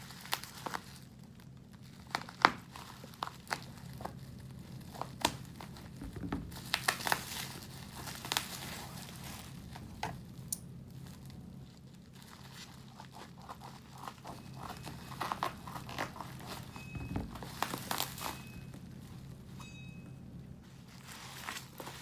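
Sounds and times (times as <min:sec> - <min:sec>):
plastic packaging crinkling: 0:00.0 - 0:19.6, 0:20.6 - 0:22.0
scissors cutting plastic: 0:02.0 - 0:04.2, 0:12.3 - 0:18.8.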